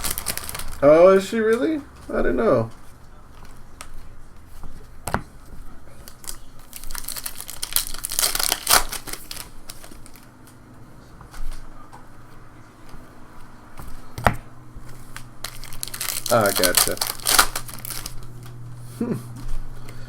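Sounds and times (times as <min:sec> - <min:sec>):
foil wrapper crinkling and tearing: 0:00.0 - 0:01.8, 0:06.0 - 0:10.4, 0:15.2 - 0:18.6.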